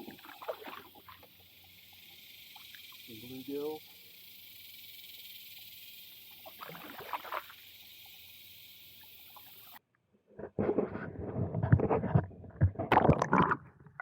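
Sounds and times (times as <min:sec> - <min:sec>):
water splash: 0:00.0 - 0:01.3, 0:06.4 - 0:07.6
water sloshing: 0:00.0 - 0:01.4
faint high hiss: 0:00.0 - 0:09.8.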